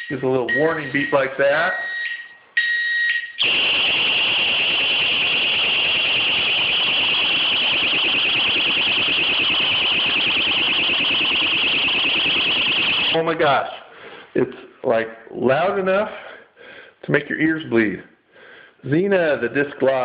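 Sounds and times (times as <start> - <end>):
high-pitched pulsing alarm: 3.1 - 13.2.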